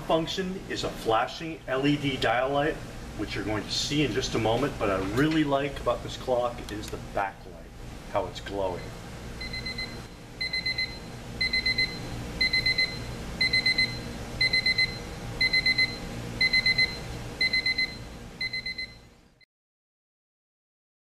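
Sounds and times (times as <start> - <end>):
alarm clock beeping: 9.4 - 19.1.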